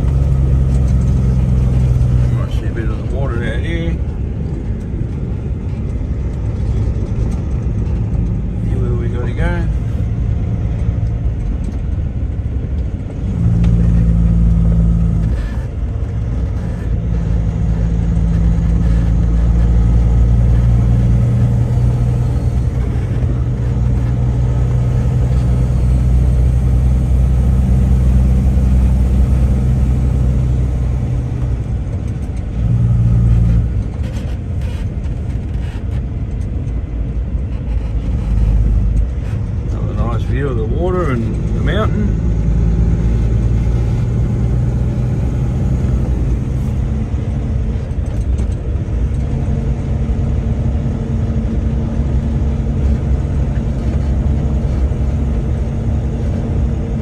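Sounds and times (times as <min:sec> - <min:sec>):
road noise: 0:00.0 - 0:57.0
vehicle engine droning: 0:00.0 - 0:57.0.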